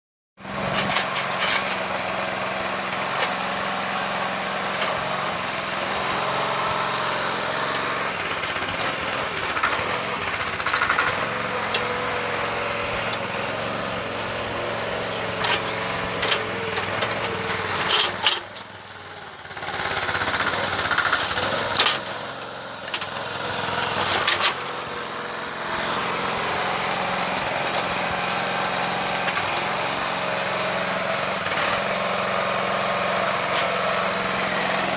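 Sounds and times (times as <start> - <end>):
small engine running: 0.4 - 34.9.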